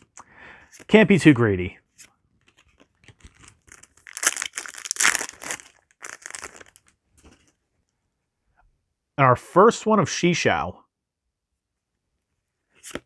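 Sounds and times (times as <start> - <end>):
foil wrapper rustling and tearing: 2.8 - 7.0
cards sliding against each other: 12.8 - 13.0.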